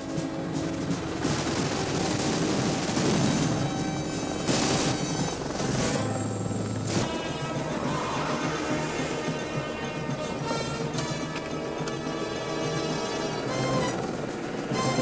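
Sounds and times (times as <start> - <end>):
helicopter rotor and turbine: 0.0 - 15.0
orchestral film score: 0.0 - 15.0.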